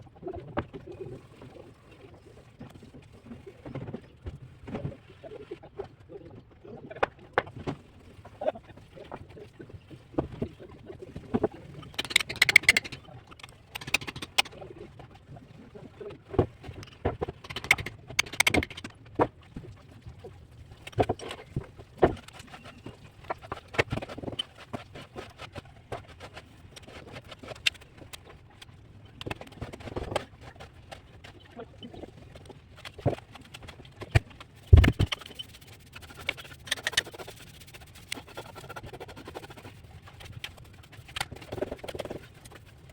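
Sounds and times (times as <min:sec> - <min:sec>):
trowel scraping: 0:11.8 - 0:13.0
trowel tapping mortar: 0:11.8 - 0:13.0, 0:13.8 - 0:14.5, 0:17.3 - 0:18.9, 0:34.8 - 0:35.4.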